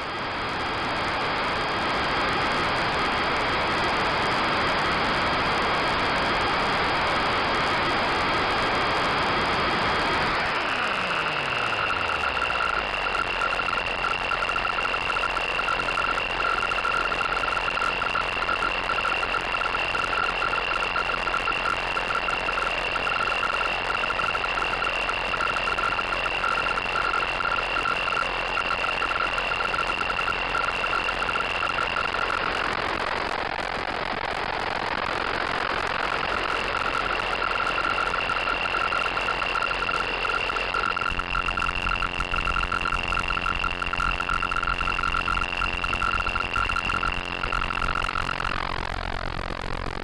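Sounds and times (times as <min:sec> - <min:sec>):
high steady whine: 0:00.0 - 0:50.0
fluttering lower tone: 0:10.3 - 0:32.5, 0:36.0 - 0:50.0
low hum: 0:35.7 - 0:50.0.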